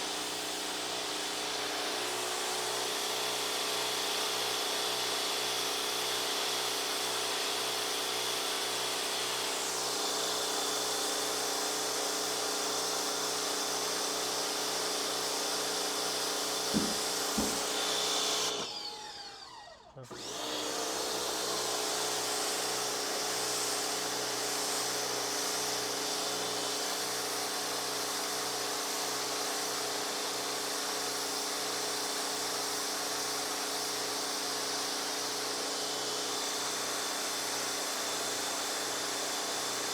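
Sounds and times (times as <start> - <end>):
pressure washer running: 11.0 - 39.9.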